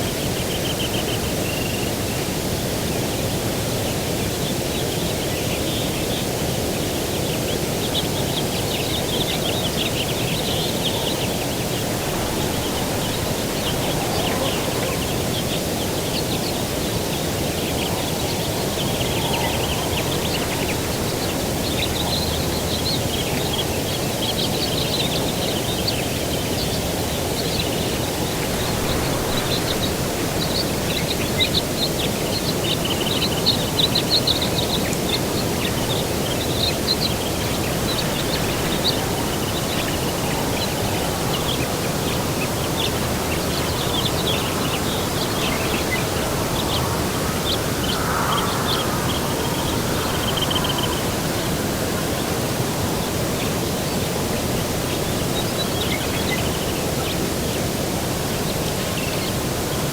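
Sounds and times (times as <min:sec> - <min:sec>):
songbirds chirping and trilling: 0:00.0 - 0:59.9
low rushing noise: 0:09.6 - 0:23.4, 0:27.0 - 0:33.4, 0:35.3 - 0:55.3.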